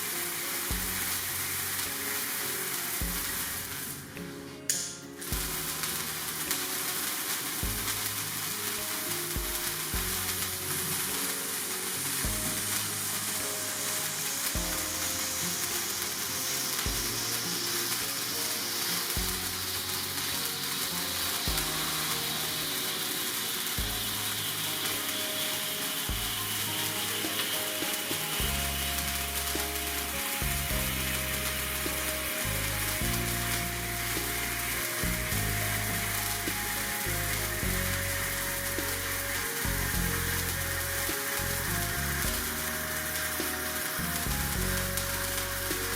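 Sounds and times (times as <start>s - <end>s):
sparkler crackling hiss: 0.0s - 45.9s
background music with bass line: 0.7s - 1.3s, 5.3s - 6.5s, 7.6s - 8.3s, 9.4s - 10.8s, 12.2s - 13.1s, 14.6s - 15.2s, 16.8s - 17.5s, 28.2s - 45.9s.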